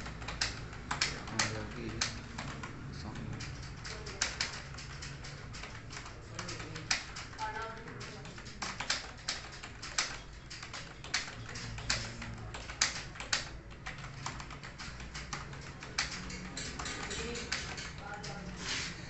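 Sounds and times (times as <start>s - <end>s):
fast typing on keyboard: 0.0s - 19.0s.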